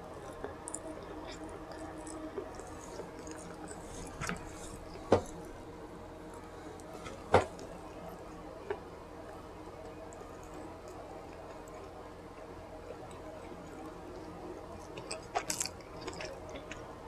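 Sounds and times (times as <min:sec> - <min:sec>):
person chewing food: 0:00.0 - 0:05.7, 0:10.0 - 0:17.0.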